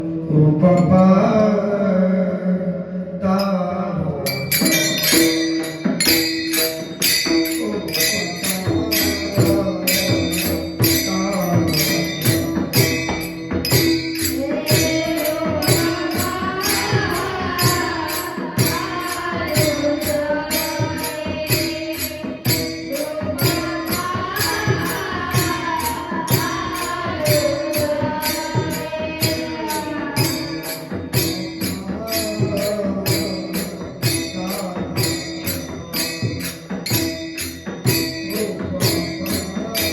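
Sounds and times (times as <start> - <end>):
person singing: 0.0 - 37.1, 37.8 - 39.9
drum strokes: 4.2 - 39.9
small hand cymbals: 4.2 - 39.9.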